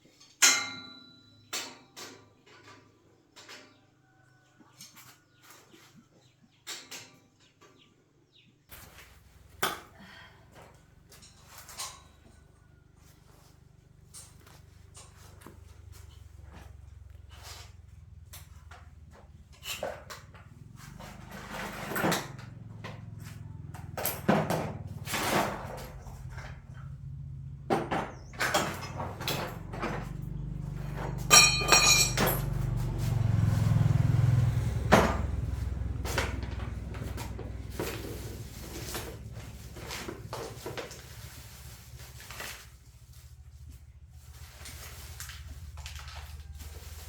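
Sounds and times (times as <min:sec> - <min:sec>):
knocks and clanks: 0:19.6 - 0:40.9.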